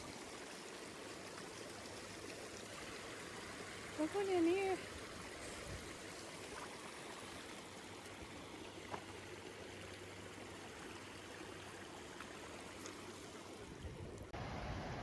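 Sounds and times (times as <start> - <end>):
mountain stream running: 0.0 - 15.0.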